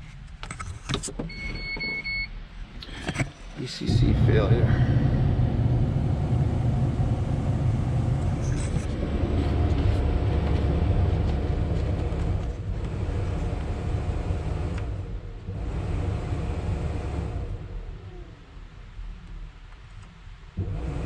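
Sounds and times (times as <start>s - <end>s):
faint hum: 2.5s - 20.8s
wheel loader engine rumble: 2.8s - 18.4s.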